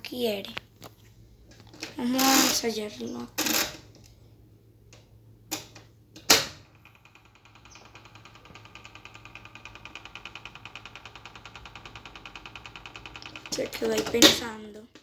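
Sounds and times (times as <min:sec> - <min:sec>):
washing machine clicks: 0:04.9 - 0:15.0
fast even ticking: 0:06.8 - 0:14.3.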